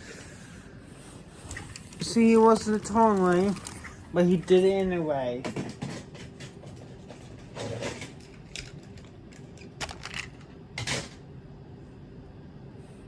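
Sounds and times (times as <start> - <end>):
clicks and rattles: 5.5 - 11.2.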